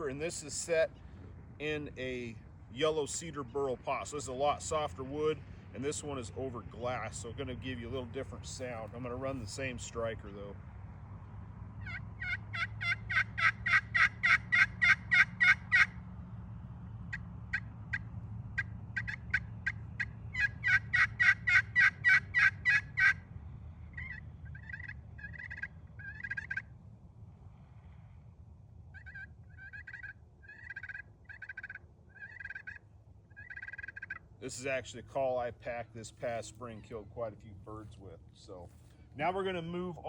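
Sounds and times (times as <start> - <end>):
turkey call clucks: 11.8 - 16.0, 17.1 - 23.2, 23.9 - 26.7, 28.9 - 34.6
turkey call yelps: 11.8 - 16.0, 17.1 - 23.2, 23.9 - 26.7, 28.9 - 34.3.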